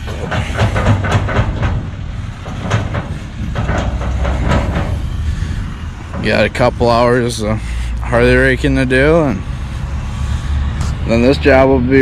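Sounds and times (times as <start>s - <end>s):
bucket knocks and clanks: 0.0s - 5.2s
diesel engine running under load: 0.0s - 12.0s.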